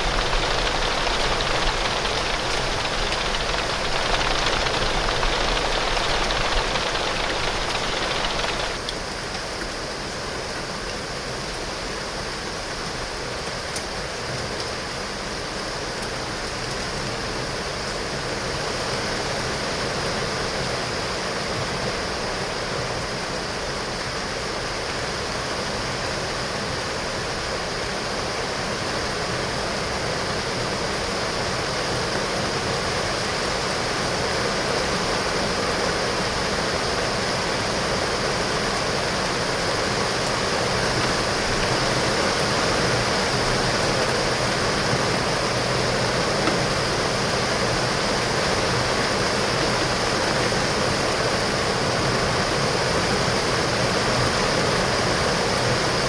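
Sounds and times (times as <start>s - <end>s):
heavy rain on window glass: 0.0s - 8.8s.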